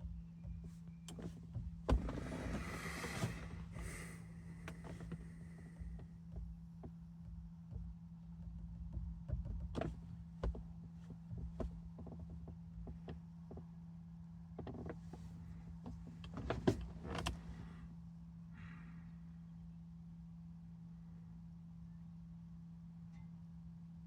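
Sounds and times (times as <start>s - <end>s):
steady low hum: 0.0s - 13.2s.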